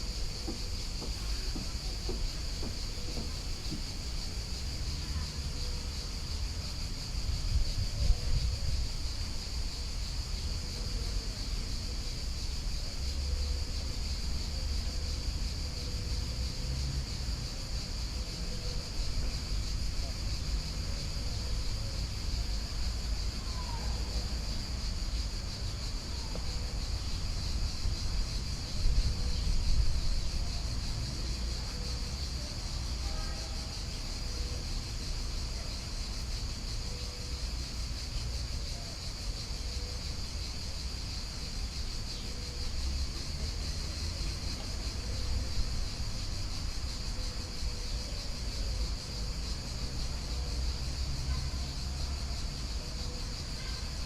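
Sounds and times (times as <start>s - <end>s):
insects trilling: 0.0s - 54.0s.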